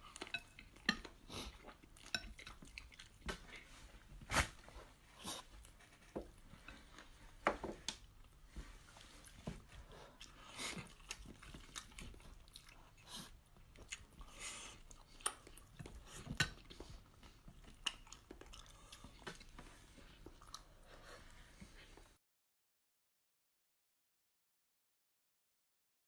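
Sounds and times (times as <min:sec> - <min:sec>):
chewing food: 0:00.0 - 0:04.2, 0:05.2 - 0:22.0.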